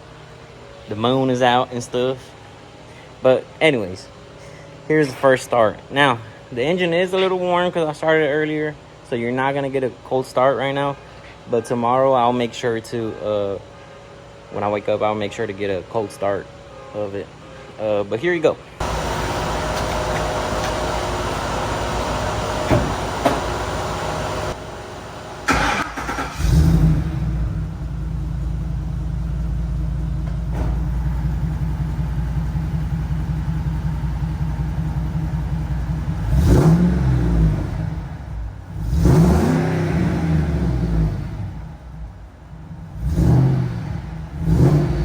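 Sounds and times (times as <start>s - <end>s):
engine idling: 18.8s - 39.3s
engine revving: 25.5s - 28.8s, 36.0s - 42.1s, 42.7s - 45.0s.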